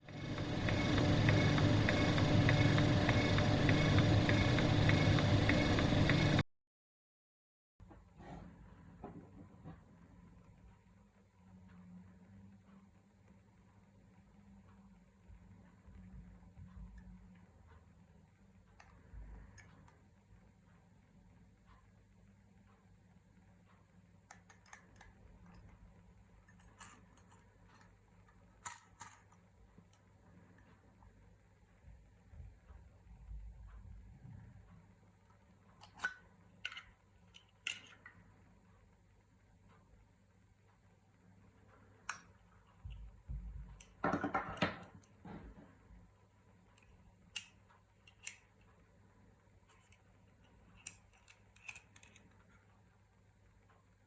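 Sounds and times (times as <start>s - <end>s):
steady low hum: 0.0s - 6.4s
clicks and knocks of hard objects: 43.8s - 45.7s.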